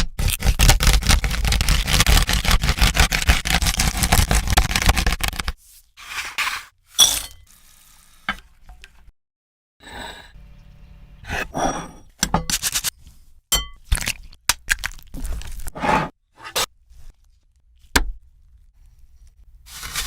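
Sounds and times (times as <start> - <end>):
kitchen utensils and dishes clinking: 6.2 - 7.6.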